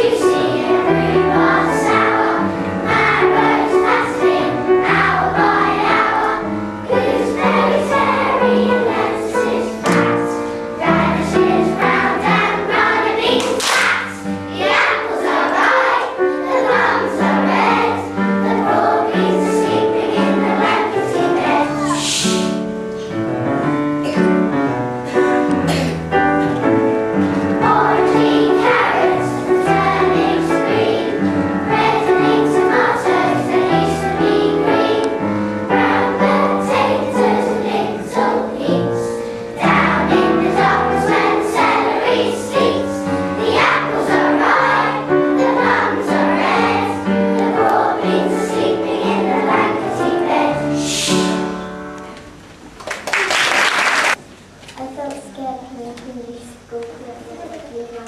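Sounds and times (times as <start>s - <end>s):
children singing in unison: 0.0s - 22.3s, 27.6s - 51.5s
instrumental accompaniment: 0.0s - 52.8s.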